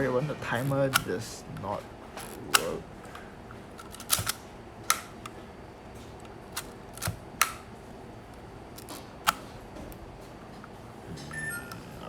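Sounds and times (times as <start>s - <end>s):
film camera clicks: 0.6s - 1.3s, 2.2s - 2.8s, 3.8s - 5.4s, 6.5s - 7.8s, 8.8s - 9.5s.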